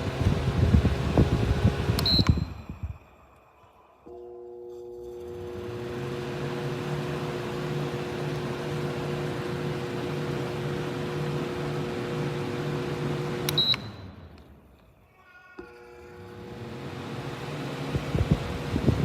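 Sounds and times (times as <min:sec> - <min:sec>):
window fan running: 0:00.0 - 0:03.0, 0:05.0 - 0:13.6, 0:16.0 - 0:19.0.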